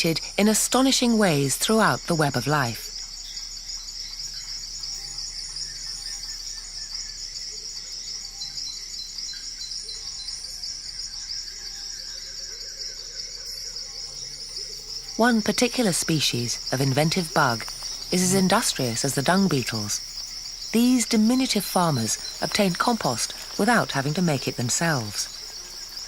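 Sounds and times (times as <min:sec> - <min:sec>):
insects droning: 0:00.0 - 0:26.0.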